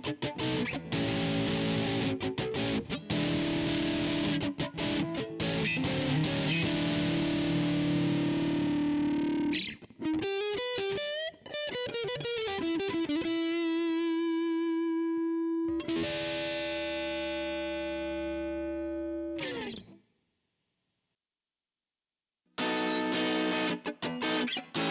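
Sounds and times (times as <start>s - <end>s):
distorted electric guitar: 0.0s - 19.9s, 22.6s - 24.9s.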